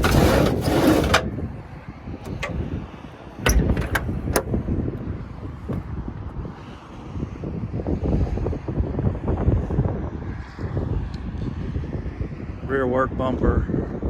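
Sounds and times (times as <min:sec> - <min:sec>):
metal latch clicks: 0:02.2 - 0:02.8, 0:03.4 - 0:04.6
metal toolbox door knocking: 0:03.5 - 0:04.5.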